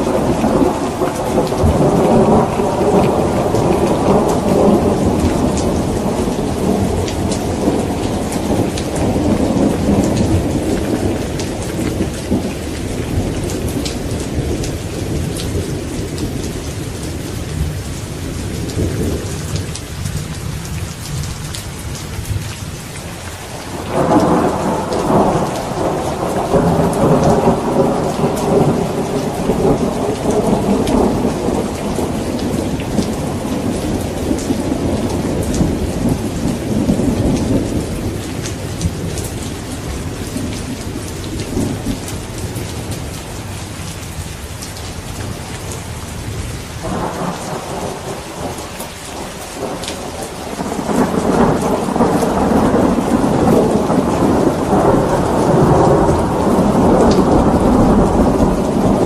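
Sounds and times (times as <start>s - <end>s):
loud thunderclap: 0.0s - 16.6s, 23.7s - 39.2s, 46.8s - 59.0s
rolling thunder: 0.0s - 20.4s, 23.6s - 43.2s, 46.2s - 59.0s
heavy rain: 0.0s - 59.0s.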